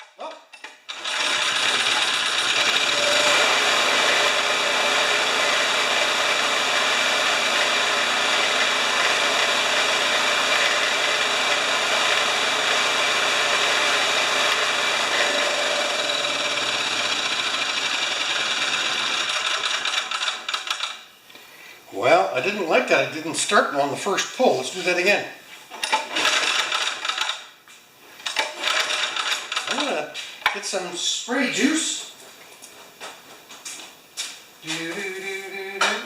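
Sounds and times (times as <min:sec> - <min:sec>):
portable generator engine running: 0:00.9 - 0:20.2.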